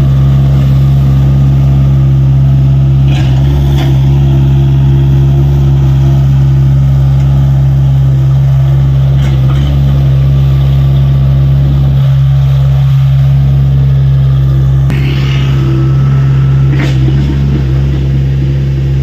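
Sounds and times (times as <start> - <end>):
excavator diesel engine droning: 0.0 - 19.0.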